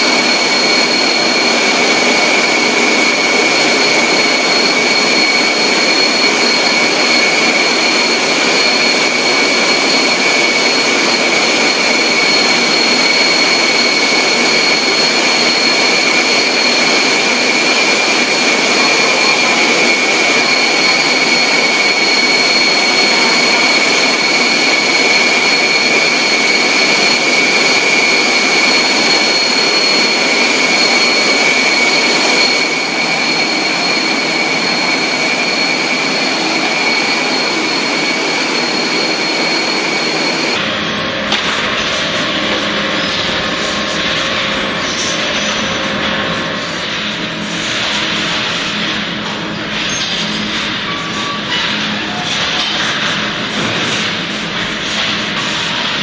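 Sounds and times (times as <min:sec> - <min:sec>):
factory machinery hissing: 0:00.0 - 0:56.0
high-pitched machine whine: 0:00.0 - 0:56.0.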